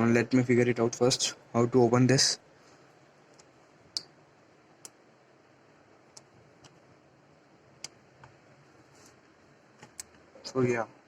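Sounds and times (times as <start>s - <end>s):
faint sharp clicks and taps: 6.1s - 6.9s, 7.8s - 8.4s, 9.0s - 10.3s.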